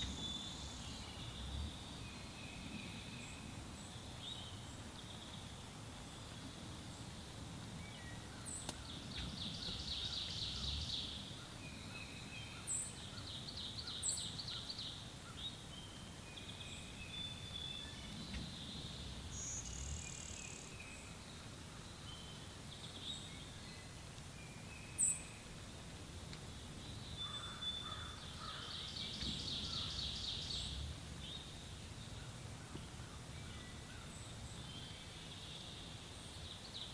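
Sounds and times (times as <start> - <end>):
songbirds trilling: 26.5 - 36.9.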